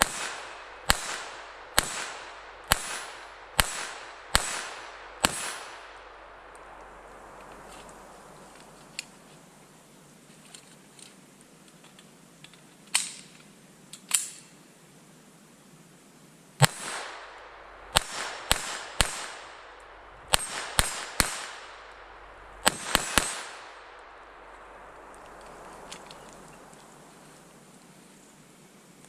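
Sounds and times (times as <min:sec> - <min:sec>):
pistol shots with echo: 0:00.0 - 0:06.4, 0:16.6 - 0:25.0.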